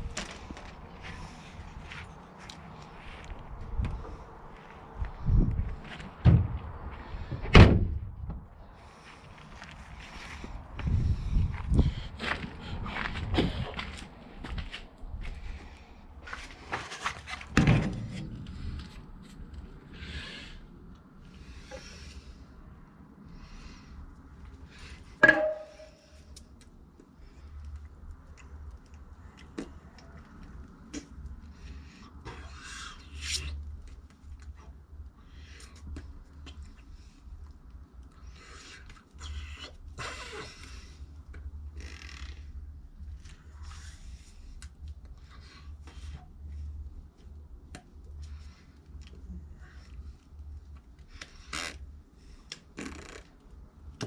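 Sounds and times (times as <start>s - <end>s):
tools clicking and knocking: 25.2s - 25.9s
loud metallic clank: 25.2s - 26.0s.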